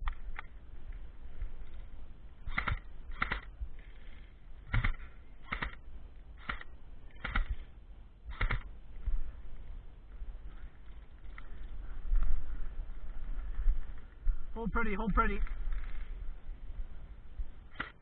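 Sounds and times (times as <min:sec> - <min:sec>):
short sharp clicks: 0:04.7 - 0:05.8, 0:06.4 - 0:07.6, 0:08.3 - 0:08.7.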